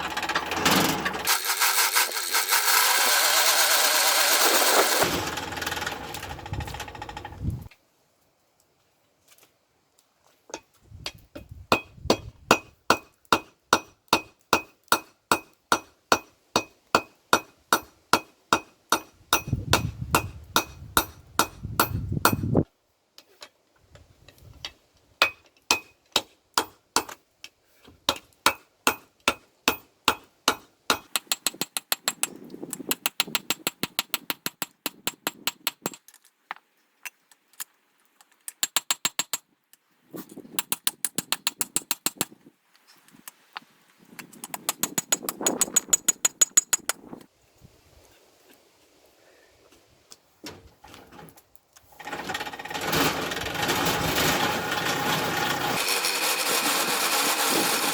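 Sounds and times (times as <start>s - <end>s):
hammer striking steel on anvil: 11.7s - 22.5s, 25.2s - 27.2s, 28.1s - 32.1s.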